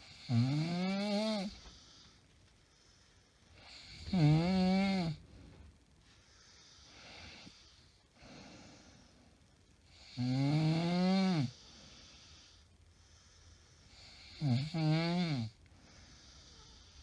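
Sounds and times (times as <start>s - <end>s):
woman snoring: 0.0s - 1.6s, 3.6s - 5.2s, 9.9s - 12.6s, 13.9s - 17.0s
quiet breathing: 0.0s - 17.0s.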